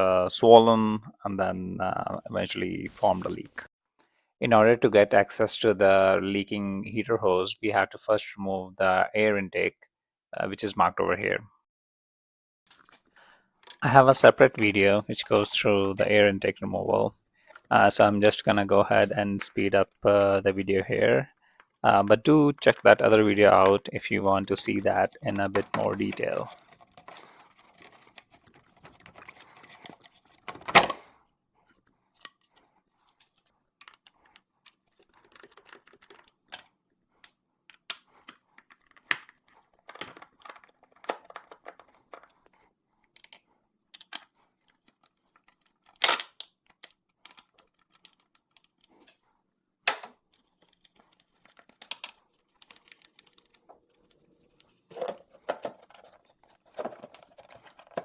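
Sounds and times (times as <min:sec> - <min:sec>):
tools clicking and knocking plastic: 0:24.9 - 0:30.9, 0:33.8 - 0:49.2, 0:49.8 - 0:58.0.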